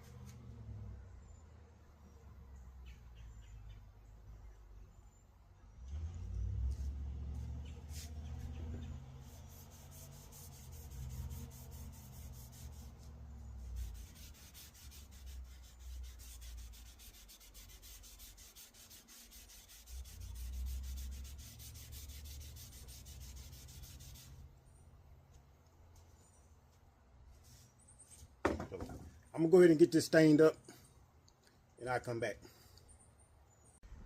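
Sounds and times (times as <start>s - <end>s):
rubbing stain onto wood: 6.7s - 24.5s.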